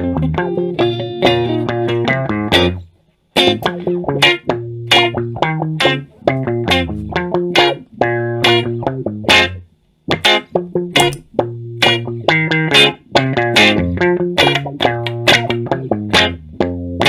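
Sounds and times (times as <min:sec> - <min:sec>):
instrumental dub music: 0:00.0 - 0:17.0.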